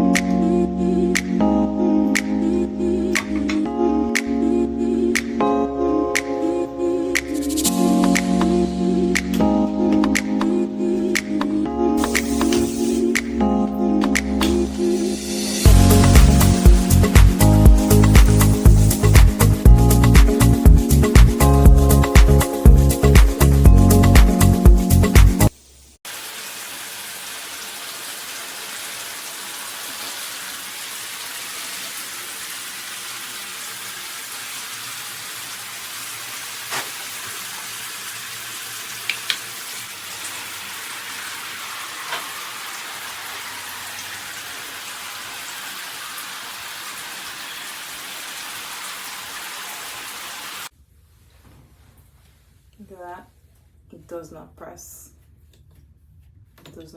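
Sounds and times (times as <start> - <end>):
shower water spraying: 12.0 - 13.4, 14.2 - 50.7.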